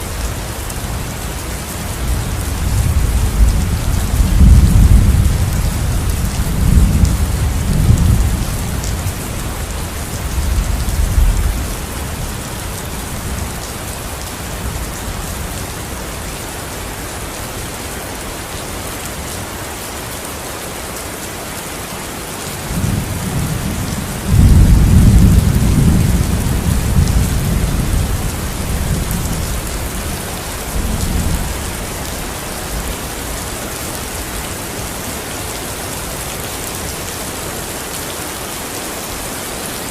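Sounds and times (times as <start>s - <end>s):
rain hissing: 0.0s - 39.9s
thunder rumbling: 2.0s - 12.4s, 22.7s - 32.9s.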